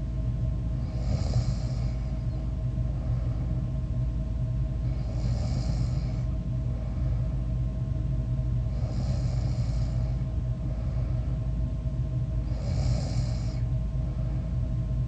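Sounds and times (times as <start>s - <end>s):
steady low hum: 0.0s - 15.0s
person snoring: 0.8s - 2.2s, 4.9s - 6.3s, 8.7s - 10.2s, 12.4s - 13.6s.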